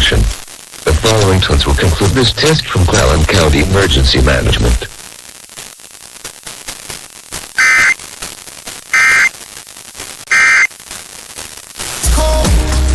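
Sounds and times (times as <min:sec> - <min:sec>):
faint radio hiss: 0:00.0 - 0:12.4
warbling digital tone bursts: 0:07.6 - 0:08.0, 0:09.0 - 0:09.3, 0:10.3 - 0:10.7.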